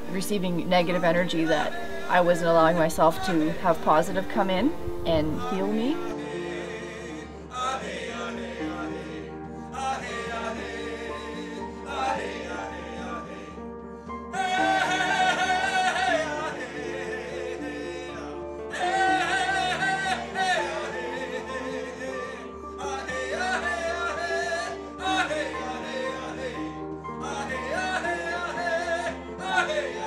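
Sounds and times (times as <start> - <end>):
person singing: 0.0 - 8.9.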